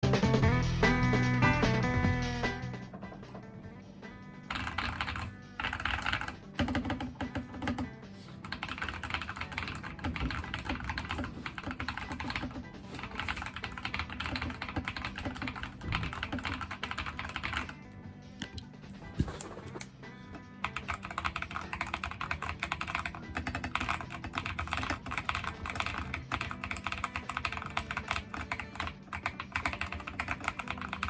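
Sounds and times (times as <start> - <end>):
typing on mechanical keyboard: 4.5 - 17.8, 20.7 - 31.0.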